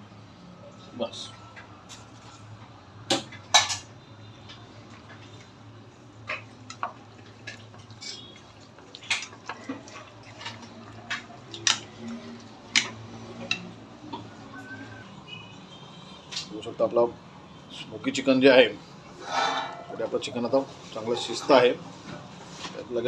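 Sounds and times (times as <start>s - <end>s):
utensils clicking against a pot: 6.3s - 12.0s, 12.7s - 13.7s.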